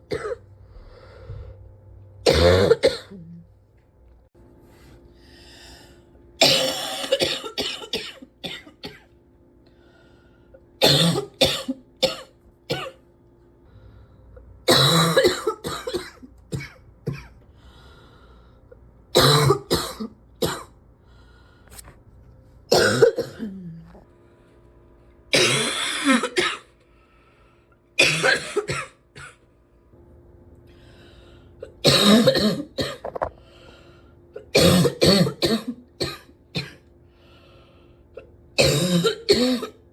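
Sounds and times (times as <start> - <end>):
person coughing: 0.0 - 0.4, 2.2 - 3.4, 6.4 - 9.1, 10.8 - 13.0, 14.7 - 17.4, 19.2 - 20.8, 22.7 - 24.0, 25.3 - 26.7, 28.0 - 29.4, 31.6 - 33.3, 34.4 - 36.9, 38.2 - 39.8.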